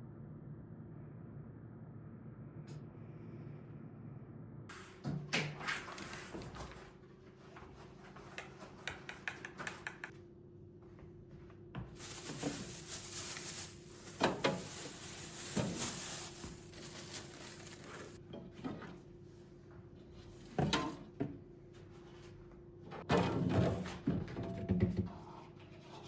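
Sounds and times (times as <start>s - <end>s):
containers knocking down: 12.0s - 18.2s
rustling hiss: 12.0s - 18.2s.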